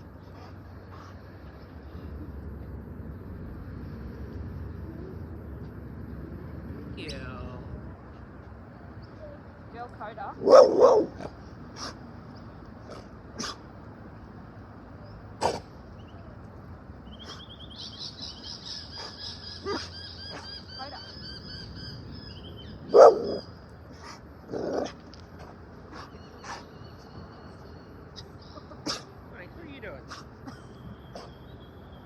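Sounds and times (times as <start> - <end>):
dog barking: 10.4 - 12.0, 13.4 - 13.6, 19.0 - 20.4, 22.9 - 23.4.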